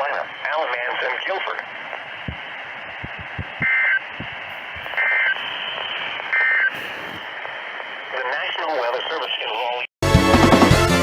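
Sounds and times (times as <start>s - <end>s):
low crackles: 0.0s - 8.9s
radio hiss: 0.0s - 9.9s
two-tone data bursts: 1.9s - 7.5s.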